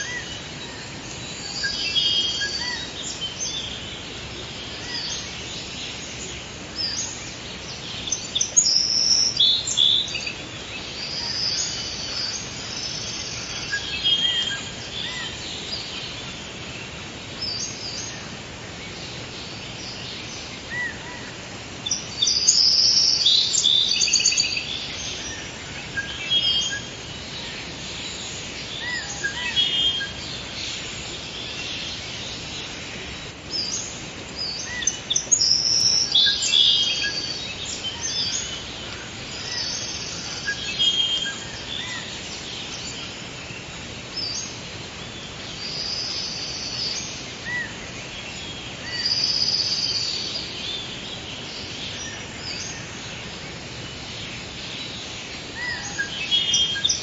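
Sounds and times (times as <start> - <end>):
songbirds chirping and trilling: 0.0 - 57.0
steady background hiss: 0.0 - 57.0.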